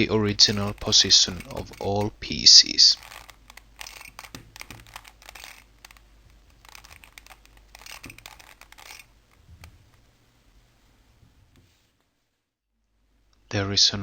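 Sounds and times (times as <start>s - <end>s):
puzzle cube clicking and rattling: 0.0s - 10.0s.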